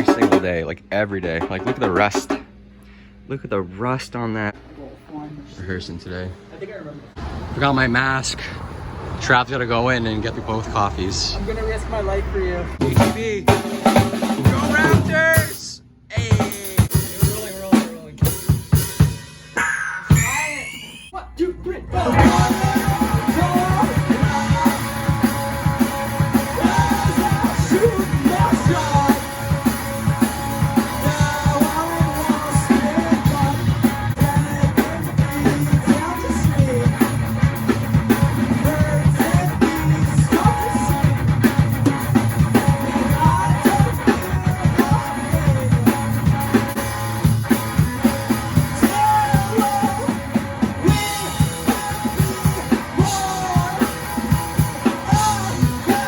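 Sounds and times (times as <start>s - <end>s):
rock band playing: 0.0s - 2.6s, 11.2s - 20.8s, 21.6s - 56.0s
drum kit beat: 0.0s - 2.7s, 12.8s - 21.0s, 21.9s - 56.0s
electric guitar: 22.0s - 56.0s.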